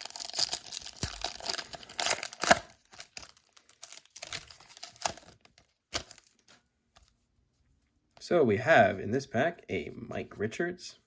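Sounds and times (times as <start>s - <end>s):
foil wrapper crinkling and tearing: 0.0s - 6.5s.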